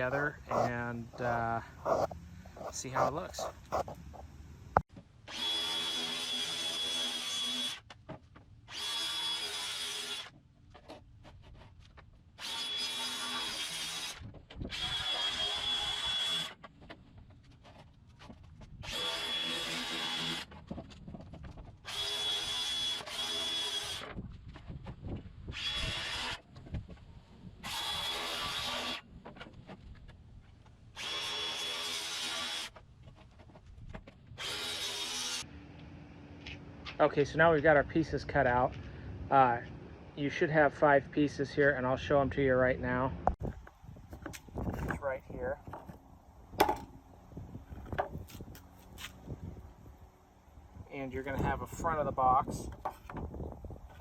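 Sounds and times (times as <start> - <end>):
electric saw cutting plywood: 5.2 - 7.9, 8.7 - 10.4, 12.4 - 16.6, 18.8 - 20.6, 21.8 - 24.2, 25.5 - 26.5, 27.6 - 29.1, 30.9 - 32.8, 34.4 - 35.5.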